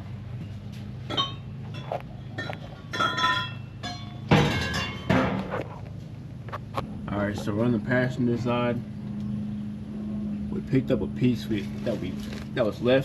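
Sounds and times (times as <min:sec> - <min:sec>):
steady low hum: 0:00.0 - 0:13.0
steel pipes clinking together: 0:01.1 - 0:05.4.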